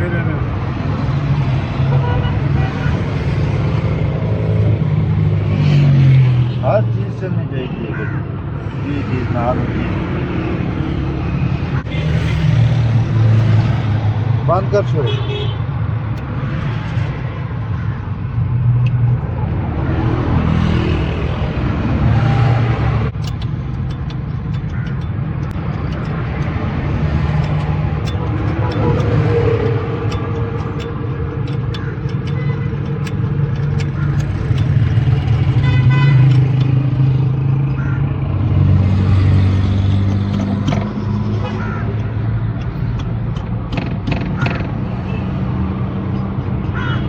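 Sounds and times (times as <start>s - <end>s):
diesel engine running: 20.2s - 47.0s.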